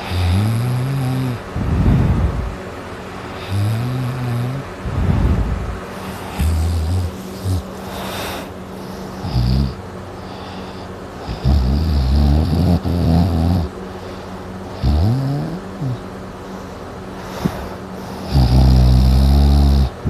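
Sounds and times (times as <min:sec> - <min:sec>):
loud rough snoring: 0:00.0 - 0:02.5, 0:03.4 - 0:08.6, 0:09.2 - 0:10.6, 0:11.2 - 0:13.7, 0:14.7 - 0:16.0, 0:17.3 - 0:20.0
faint steady hum: 0:00.0 - 0:20.0.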